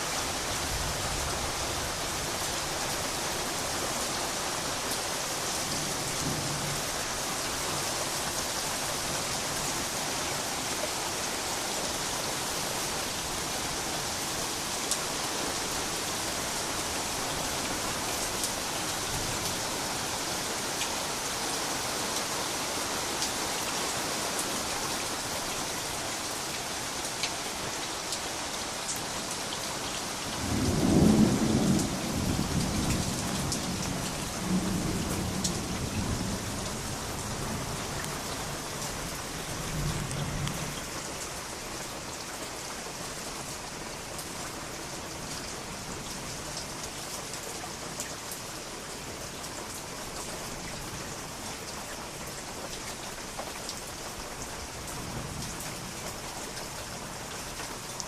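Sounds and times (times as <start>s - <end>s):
heavy rain falling: 0.0s - 58.0s
rolling thunder: 30.4s - 36.6s.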